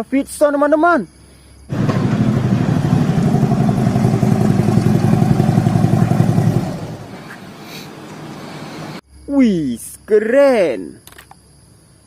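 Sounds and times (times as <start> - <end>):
motorcycle engine running: 1.7 - 7.4.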